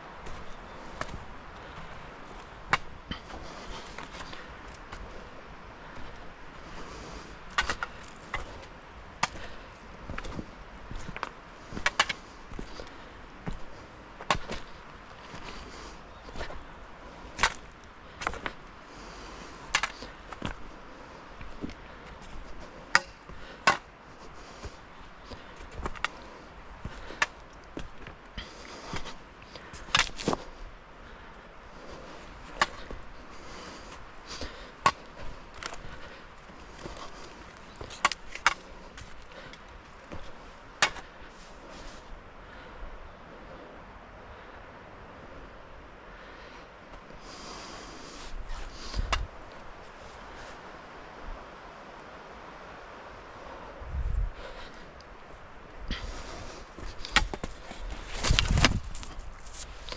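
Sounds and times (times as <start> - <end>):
footsteps crunching on frozen ground: 0.0 - 30.6, 31.7 - 42.1, 54.5 - 59.9
faint steady hiss: 0.0 - 59.9
twigs snapping underfoot: 0.2 - 16.7, 19.5 - 20.7, 24.5 - 30.5, 32.2 - 41.2, 55.9 - 59.9.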